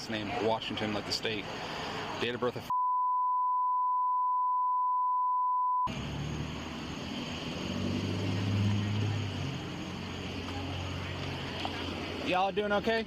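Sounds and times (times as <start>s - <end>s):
censor bleep: 2.7s - 5.9s
vehicle idling hum: 5.9s - 13.0s.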